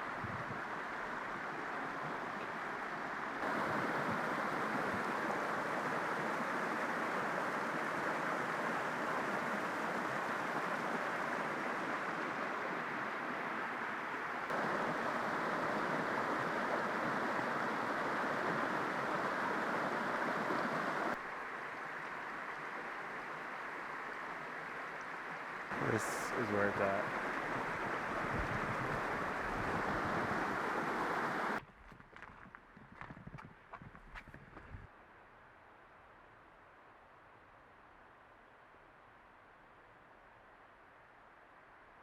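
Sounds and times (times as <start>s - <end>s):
stream rushing over rocks: 0.0s - 31.6s.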